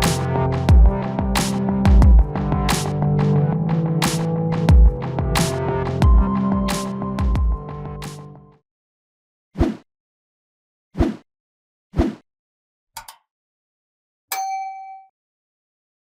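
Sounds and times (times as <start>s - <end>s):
bell-like ding: 14.3s - 15.1s.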